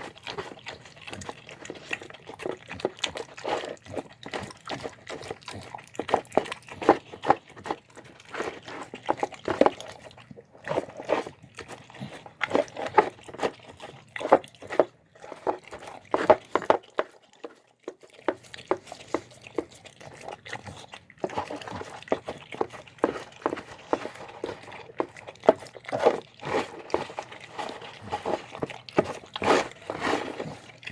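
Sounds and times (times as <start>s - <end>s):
dog chewing and smacking: 0.0s - 30.9s.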